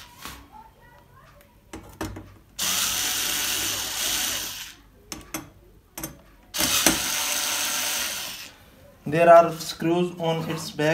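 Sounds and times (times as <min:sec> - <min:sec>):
electric screwdriver whirring: 0:02.6 - 0:04.8, 0:06.6 - 0:08.5.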